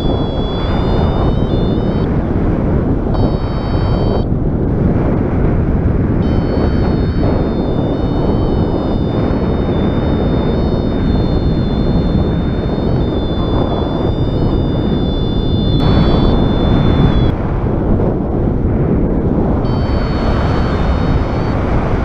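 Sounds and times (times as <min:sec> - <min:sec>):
thin high whine: 0:00.0 - 0:02.3, 0:03.1 - 0:04.3, 0:06.2 - 0:17.4, 0:19.6 - 0:22.0
wind buffeting microphone: 0:00.0 - 0:22.0.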